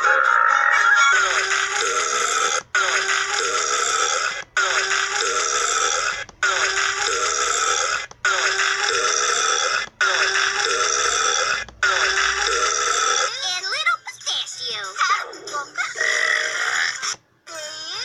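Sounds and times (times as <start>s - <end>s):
burp sound: 1.8s - 13.3s.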